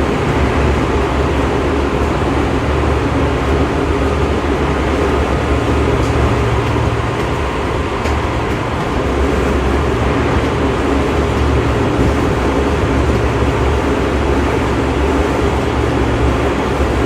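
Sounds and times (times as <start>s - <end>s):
electric train rumbling: 0.0s - 17.0s.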